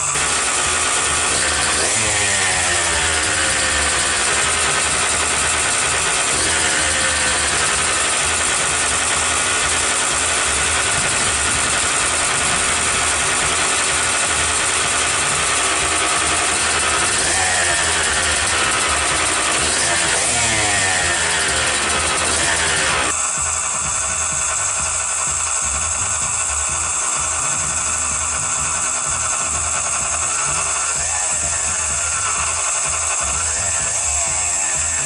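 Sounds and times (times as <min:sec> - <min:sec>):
dirt bike engine revving: 0:00.0 - 0:35.0.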